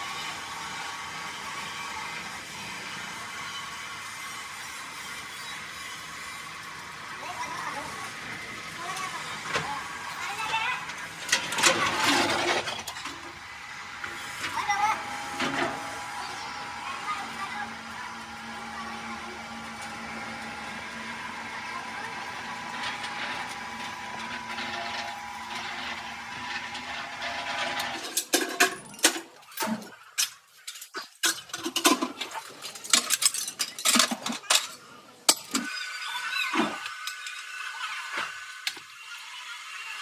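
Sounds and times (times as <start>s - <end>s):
workshop machinery humming: 0.0s - 30.0s.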